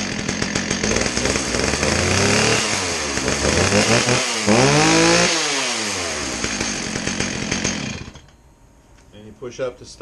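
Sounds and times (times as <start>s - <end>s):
chainsaw revving: 0.0s - 8.3s.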